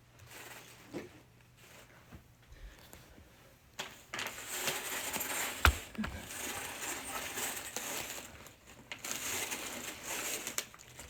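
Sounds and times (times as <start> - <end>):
rustling handling noise: 3.8 - 10.6.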